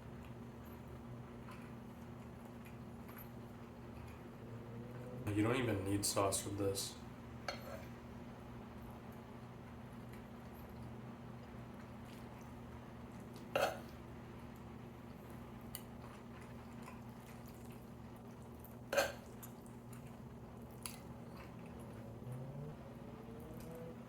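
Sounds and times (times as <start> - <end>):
quiet chewing: 0.0 - 5.0, 9.8 - 23.9
steady low hum: 0.0 - 24.0.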